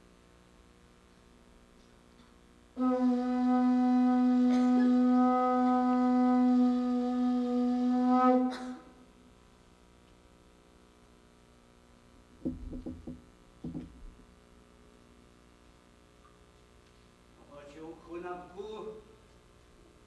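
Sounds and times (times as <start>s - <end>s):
horn blowing long note: 2.8s - 9.2s.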